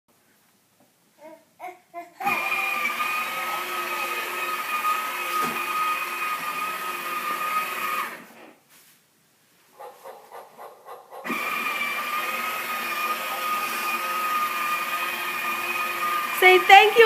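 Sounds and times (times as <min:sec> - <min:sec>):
toy train motor whirring: 0:02.2 - 0:08.3, 0:11.3 - 0:17.0.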